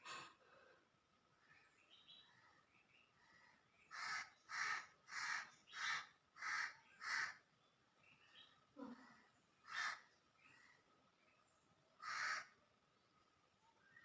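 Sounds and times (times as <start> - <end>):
crow cawing: 3.9 - 7.4, 9.6 - 10.1, 12.0 - 12.6.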